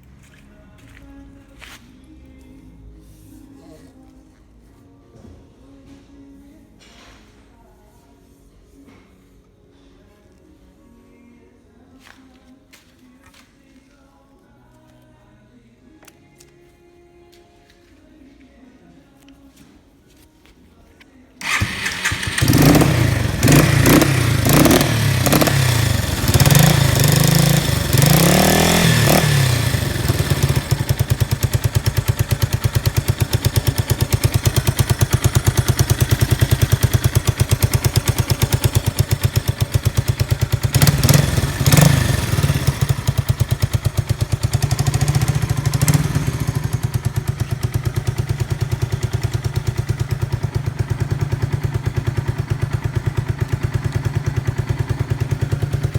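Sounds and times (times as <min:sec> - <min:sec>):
motorcycle engine revving and idling: 0:21.4 - 0:55.9.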